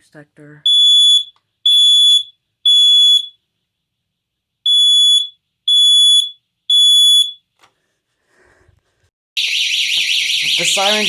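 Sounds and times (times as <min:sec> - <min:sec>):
smoke detector beeping: 0:09.4 - 0:11.0.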